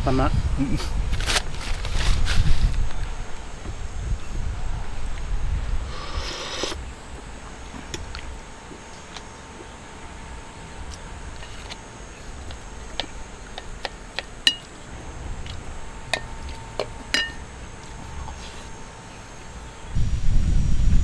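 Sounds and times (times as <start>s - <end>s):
small hard objects clinking: 1.1s - 3.2s, 10.9s - 17.6s.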